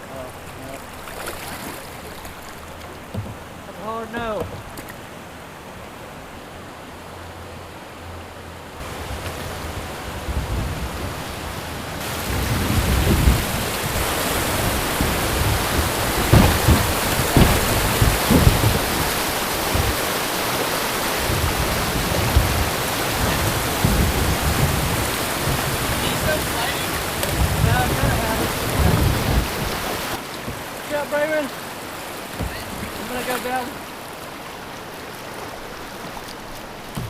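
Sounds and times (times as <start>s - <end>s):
rushing river water: 0.0s - 37.0s
low irregular thumps: 2.9s - 4.9s, 12.0s - 31.1s.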